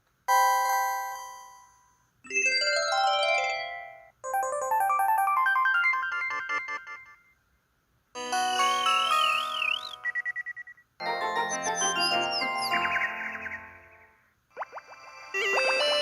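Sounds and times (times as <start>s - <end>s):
phone ringtone melodies: 2.3s - 7.3s, 8.2s - 14.1s, 14.7s - 16.0s
warbling tone: 14.5s - 16.0s.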